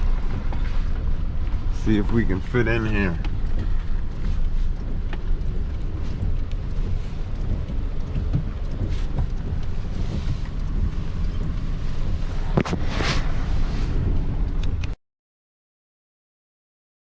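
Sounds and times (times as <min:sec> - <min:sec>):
wind noise on microphone: 0:00.0 - 0:01.8, 0:03.2 - 0:15.0
truck engine running: 0:00.0 - 0:15.0.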